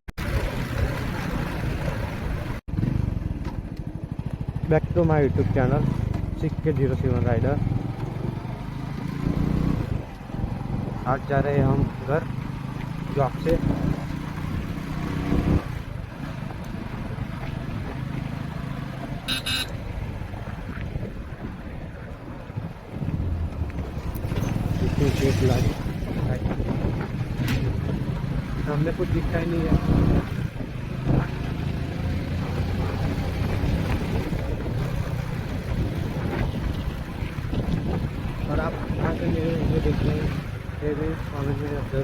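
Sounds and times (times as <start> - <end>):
wind and road rush: 0.1 - 42.0
motorcycle engine running: 0.3 - 42.0
short horn beep: 19.3 - 19.8.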